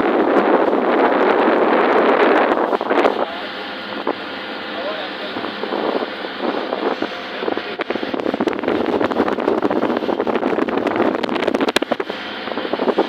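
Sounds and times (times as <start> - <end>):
motorboat running: 0.0 - 13.0
wind buffeting microphone: 0.0 - 13.0
rapid crackling thumps: 8.2 - 12.0.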